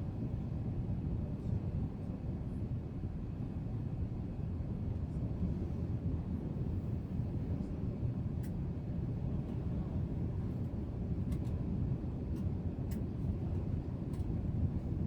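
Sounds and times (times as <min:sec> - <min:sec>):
airliner cabin rumble: 0:05.4 - 0:15.0.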